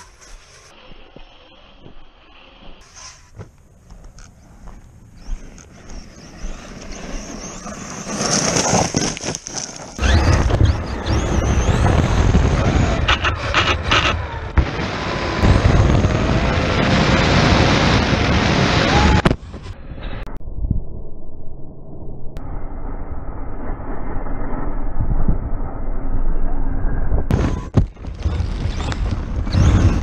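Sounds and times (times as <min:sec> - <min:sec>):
wind rumble on microphone: 0:10.0 - 0:21.1, 0:22.4 - 0:30.0.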